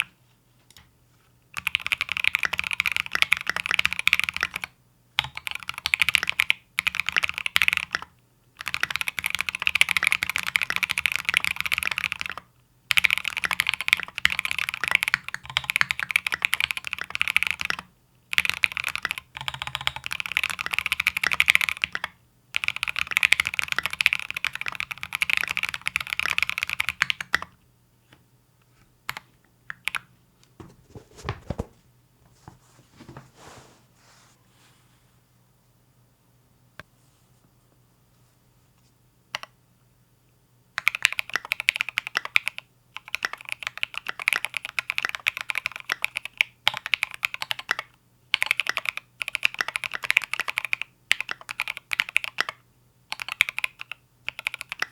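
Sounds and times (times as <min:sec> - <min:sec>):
fast typing on mechanical keyboard: 0:01.6 - 0:27.5, 0:40.8 - 0:54.9.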